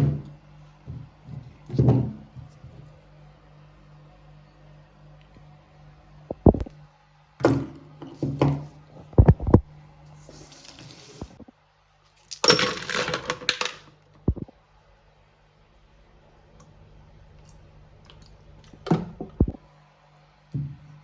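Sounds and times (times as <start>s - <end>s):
small parts knocking and clinking: 12.2s - 14.4s.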